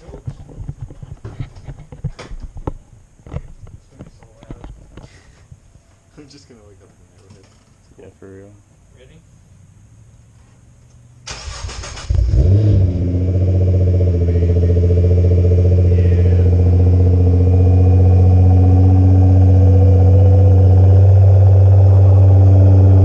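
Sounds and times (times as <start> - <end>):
car engine idling: 11.3 - 23.0.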